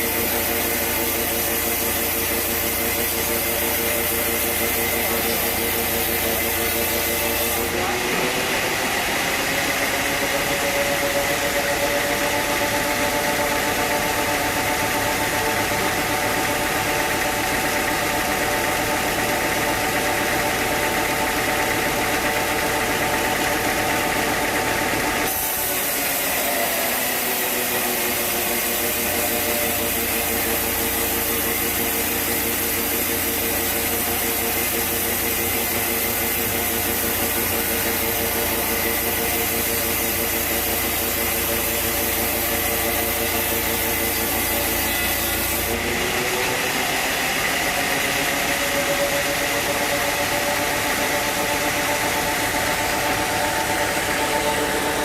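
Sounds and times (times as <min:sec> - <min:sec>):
sawmill machinery motor hum: 0:00.0 - 0:55.0.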